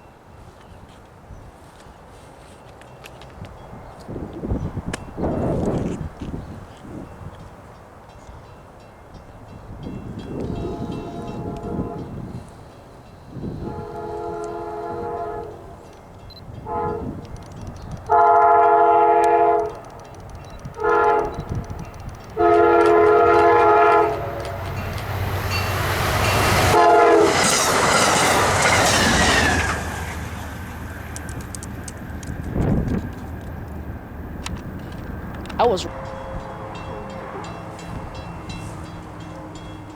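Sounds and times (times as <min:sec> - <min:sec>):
train wheel and rail noise: 0:00.0 - 0:39.9
locomotive horn blasts: 0:10.3 - 0:12.3, 0:13.4 - 0:15.8, 0:16.6 - 0:17.2, 0:18.1 - 0:19.8, 0:20.8 - 0:21.6, 0:22.4 - 0:24.8, 0:26.3 - 0:27.6, 0:35.8 - 0:39.8.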